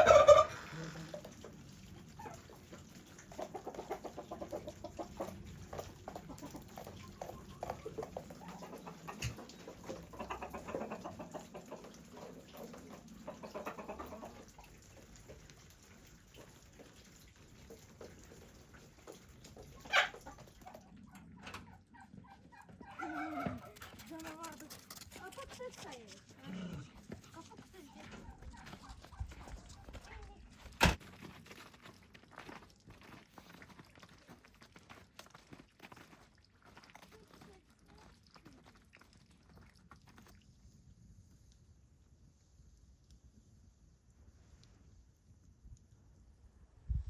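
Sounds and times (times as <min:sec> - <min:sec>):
chickens clucking: 0:00.0 - 0:15.5, 0:16.2 - 0:30.2.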